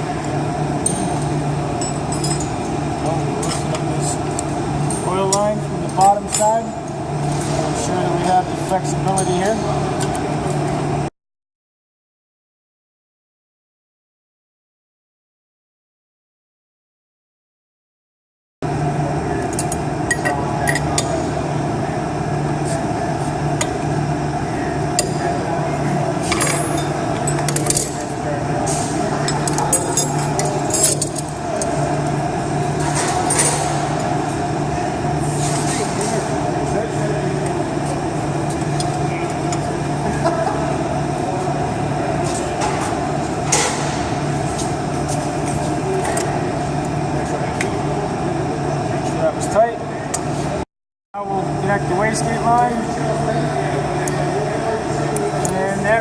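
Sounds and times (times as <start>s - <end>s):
steady background hum: 0.0s - 11.1s, 18.6s - 50.6s, 51.2s - 56.0s
hand tools clinking on metal: 4.9s - 6.7s.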